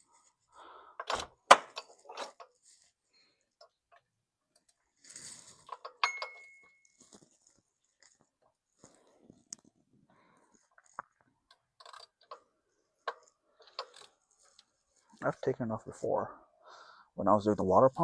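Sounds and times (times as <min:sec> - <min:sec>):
metal tools clinking: 0:05.6 - 0:07.2
wrench on bolts: 0:11.5 - 0:14.2.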